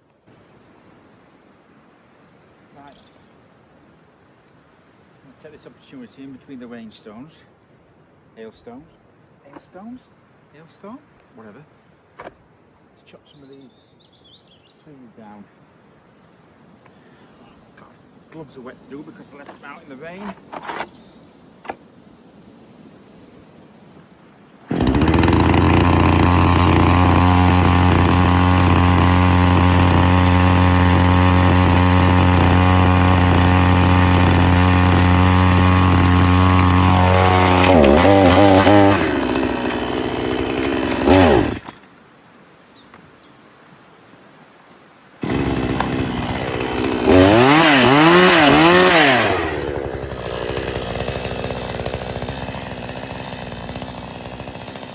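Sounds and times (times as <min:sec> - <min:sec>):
chainsaw engine revving: 0:19.3 - 0:20.9, 0:24.7 - 0:41.8, 0:45.2 - 0:54.9.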